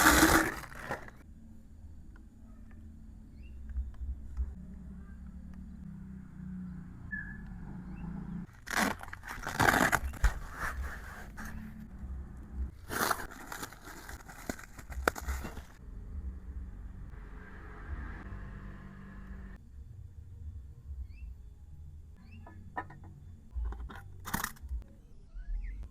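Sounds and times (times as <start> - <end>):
packaging crinkling and tearing: 0.0 - 1.2, 8.5 - 11.5, 12.8 - 15.8.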